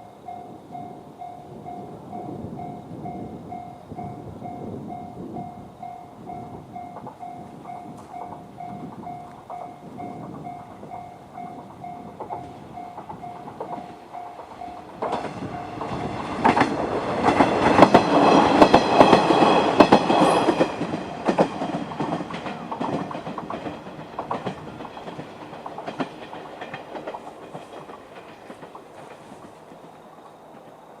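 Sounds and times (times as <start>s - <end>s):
level crossing warning bell: 0.0s - 16.6s
train wheels clacking on rails: 0.0s - 31.0s.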